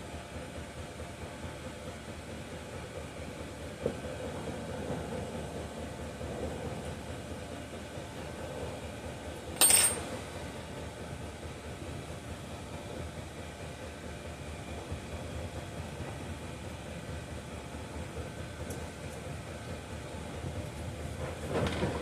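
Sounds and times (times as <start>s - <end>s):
steady background hum: 9.4s - 11.3s
sharp metallic clink: 9.6s - 10.2s.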